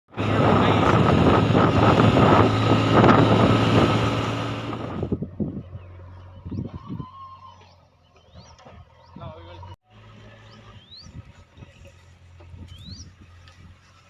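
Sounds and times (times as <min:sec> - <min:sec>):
diesel engine running: 0:00.1 - 0:06.9, 0:09.6 - 0:14.0
loud engine clatter: 0:00.1 - 0:09.0, 0:09.9 - 0:14.0.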